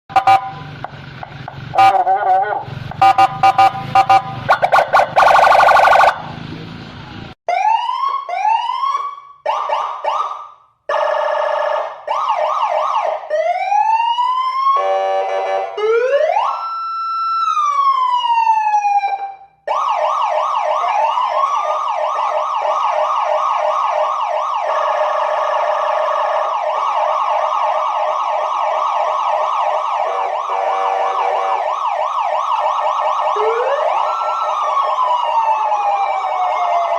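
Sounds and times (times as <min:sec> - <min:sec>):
electronic siren changing tones: 0:00.1 - 0:00.9, 0:01.5 - 0:06.4, 0:07.5 - 0:36.9.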